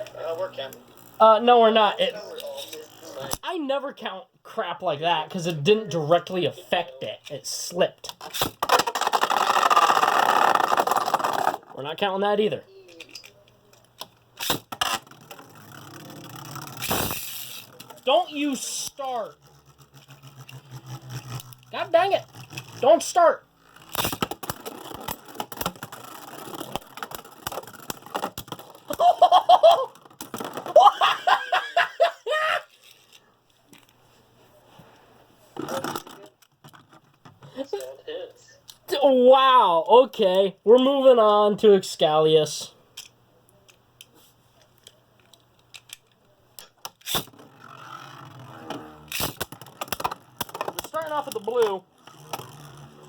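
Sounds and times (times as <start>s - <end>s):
spinning tops clashing and clicking: 14.4s - 21.7s
spinning tops launched: 14.4s - 21.7s, 47.0s - 50.8s
people laughing: 28.9s - 30.0s, 30.7s - 32.7s
plastic parts clicking and tapping: 49.1s - 52.5s.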